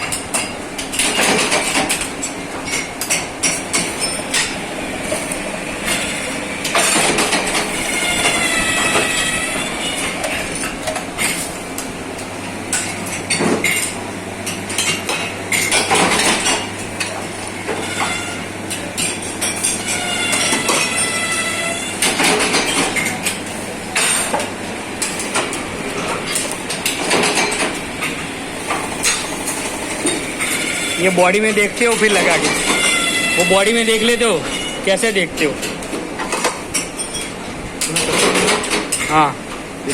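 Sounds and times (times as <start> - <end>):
steady machine hum: 0.0 - 39.9
high metallic squeals: 5.1 - 10.8, 17.7 - 18.8, 19.4 - 23.2, 29.0 - 35.1.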